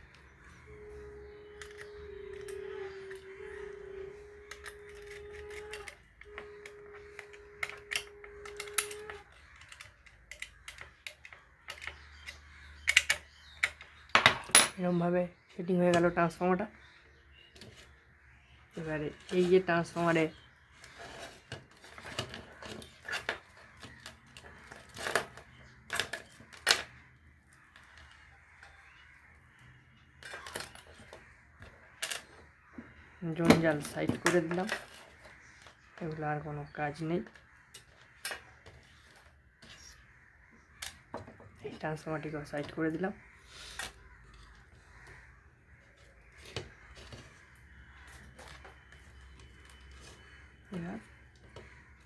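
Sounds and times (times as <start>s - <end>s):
light clicks of screws and nuts: 7.1s - 14.8s.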